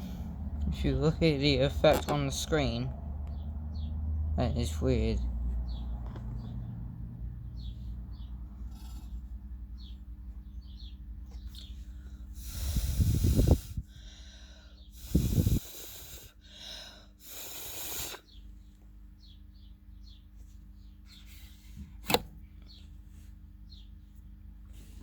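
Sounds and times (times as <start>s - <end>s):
puffs of breath blowing: 12.0s - 18.4s
wind rumble on microphone: 12.5s - 14.0s, 15.0s - 15.7s
sharp click: 22.0s - 22.3s.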